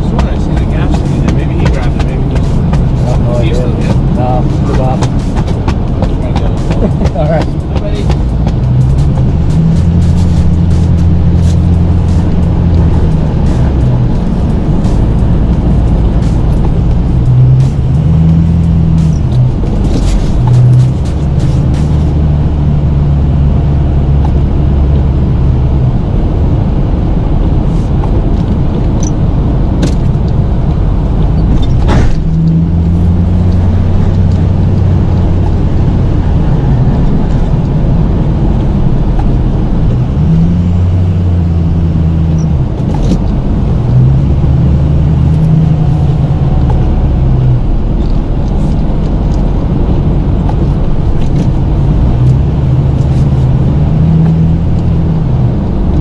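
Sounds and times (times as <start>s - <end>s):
truck engine running: 0.0s - 56.0s
sharp knocks: 31.3s - 35.9s.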